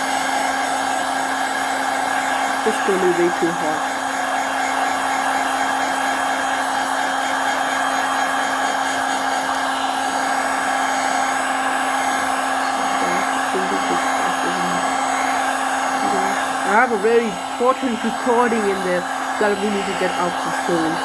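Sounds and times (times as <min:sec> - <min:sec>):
hot-air blower humming: 0:00.0 - 0:21.0.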